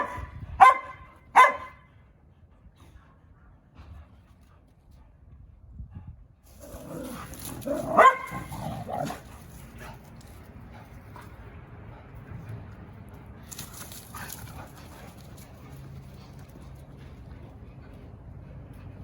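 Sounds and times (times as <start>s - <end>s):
dog barking: 0.0s - 1.8s, 7.9s - 9.2s.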